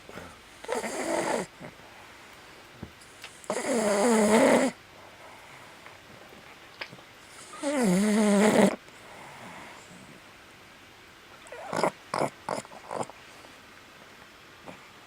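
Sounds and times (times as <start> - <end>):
dog snorting: 0.1 - 1.8, 3.3 - 5.6, 7.4 - 9.8, 11.5 - 13.2
dog moaning: 0.6 - 1.8, 3.4 - 4.8, 7.4 - 9.6, 11.5 - 13.2.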